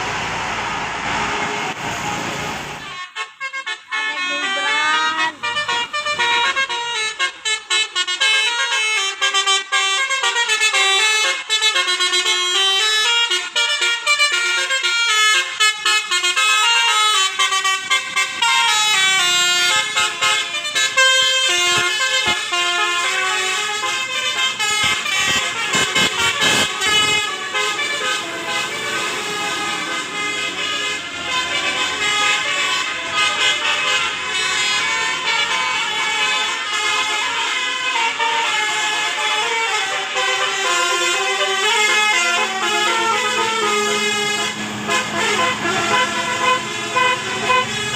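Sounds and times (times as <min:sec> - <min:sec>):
musical bus horn melody: 0:01.0 - 0:47.9.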